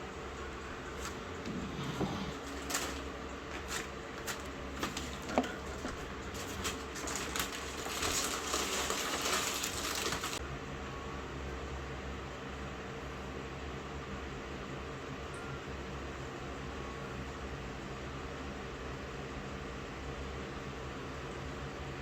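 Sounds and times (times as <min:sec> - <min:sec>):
rustling: 0:00.9 - 0:10.4.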